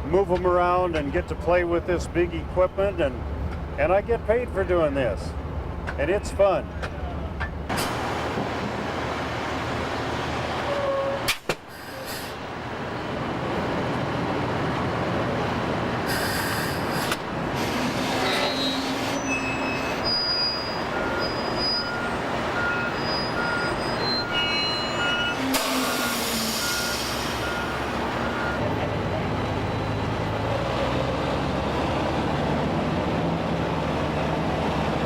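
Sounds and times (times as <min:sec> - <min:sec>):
machinery squealing: 0:16.1 - 0:28.6
reversing alarm beeping: 0:19.2 - 0:28.6.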